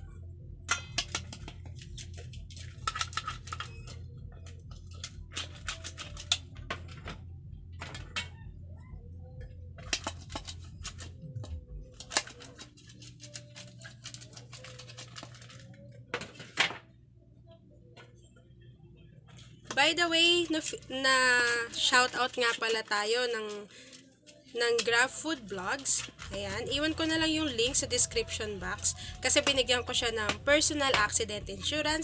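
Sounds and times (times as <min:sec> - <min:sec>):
low hum: 0:00.0 - 0:16.3
utensils clinking on metal bowls: 0:00.7 - 0:04.0.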